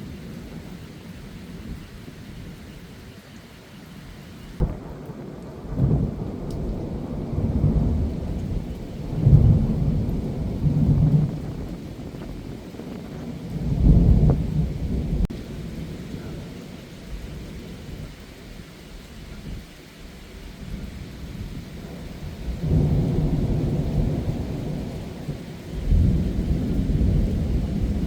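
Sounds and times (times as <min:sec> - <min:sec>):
heavy rain: 0:00.0 - 0:28.0
thunder rumbling: 0:04.5 - 0:18.2, 0:20.5 - 0:28.0.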